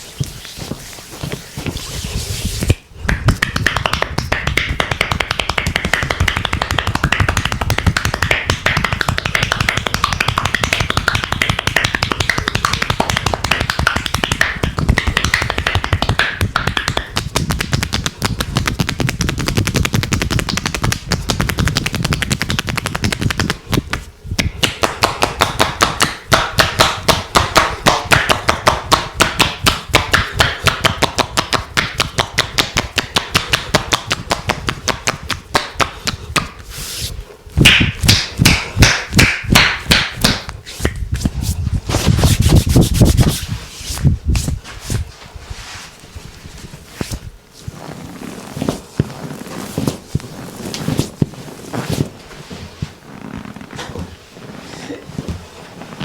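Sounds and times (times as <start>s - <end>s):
hands striking skin: 3.1s - 43.4s.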